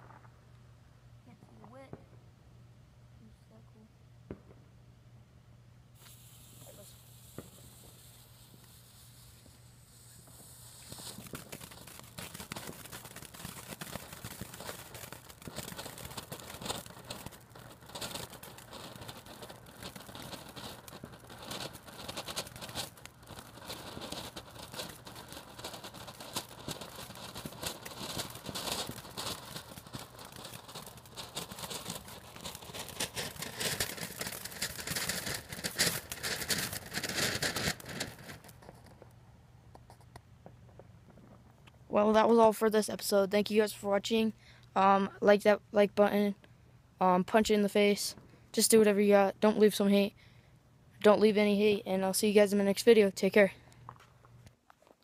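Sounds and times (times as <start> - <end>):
firework fountain crackling and hissing: 5.9 - 39.2, 47.3 - 50.2.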